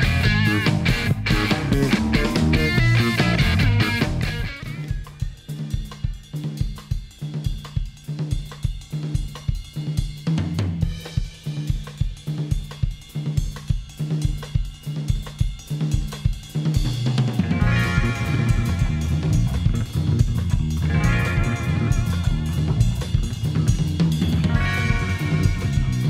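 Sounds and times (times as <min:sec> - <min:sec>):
bass line: 0:00.0 - 0:05.2, 0:17.4 - 0:26.0
guitar: 0:00.0 - 0:05.4, 0:16.9 - 0:26.0
drum kit groove: 0:00.0 - 0:26.0.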